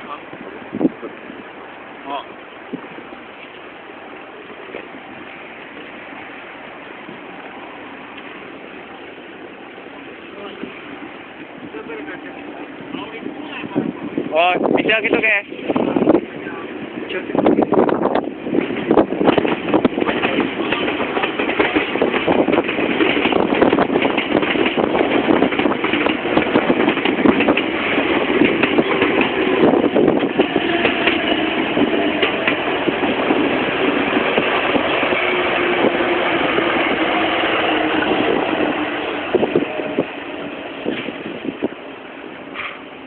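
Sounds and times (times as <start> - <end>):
train wheels clattering on rails: 17.1 - 43.0.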